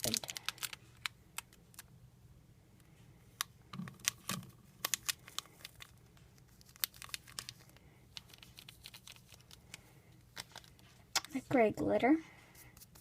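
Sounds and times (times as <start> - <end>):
plastic container crinkling: 0.0 - 1.9, 3.7 - 11.4.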